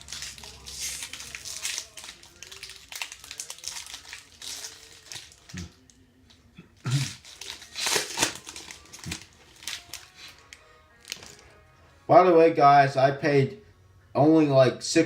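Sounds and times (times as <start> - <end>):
foil wrapper tearing and crinkling: 0.0 - 6.0, 6.9 - 11.4.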